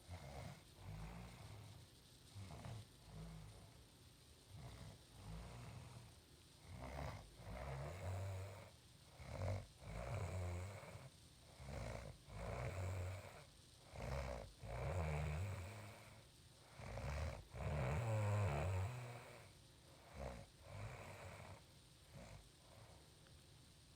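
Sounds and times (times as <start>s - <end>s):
woman snoring loudly: 6.7s - 16.2s, 16.8s - 19.5s, 20.1s - 21.6s.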